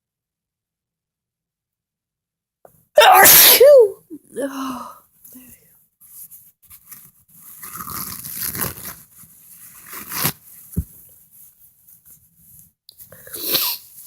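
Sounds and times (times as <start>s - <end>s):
person sneezing: 3.0s - 4.9s, 13.2s - 13.8s.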